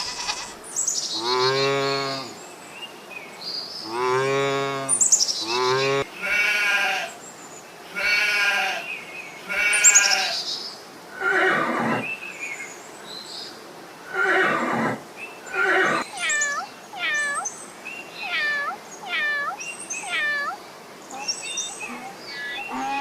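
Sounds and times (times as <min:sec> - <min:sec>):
sheep bleating: 0:00.0 - 0:00.6, 0:05.5 - 0:07.2, 0:07.9 - 0:08.9, 0:09.5 - 0:10.4, 0:15.6 - 0:17.4
short high repeated animal calls: 0:00.0 - 0:00.6, 0:15.6 - 0:17.6, 0:18.2 - 0:23.0.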